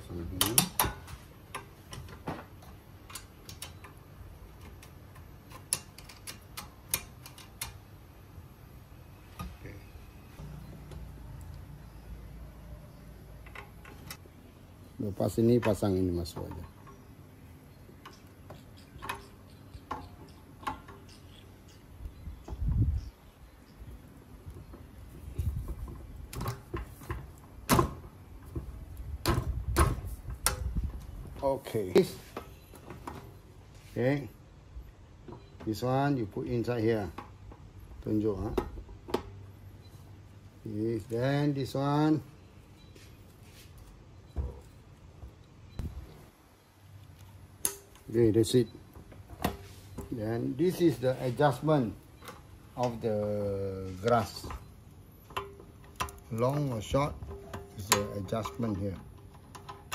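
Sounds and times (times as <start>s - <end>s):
mower parts clicking and tapping: 0.2s - 7.9s, 13.3s - 14.4s, 15.2s - 17.2s, 17.8s - 21.4s, 24.4s - 33.4s, 36.6s - 39.4s, 47.0s - 53.2s, 53.8s - 59.9s.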